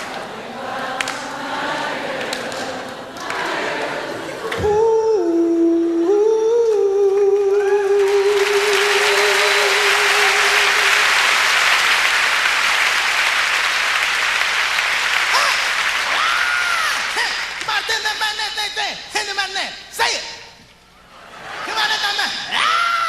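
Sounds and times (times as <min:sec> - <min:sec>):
man singing long note: 0:04.6 - 0:11.2
audience applause: 0:07.6 - 0:17.9.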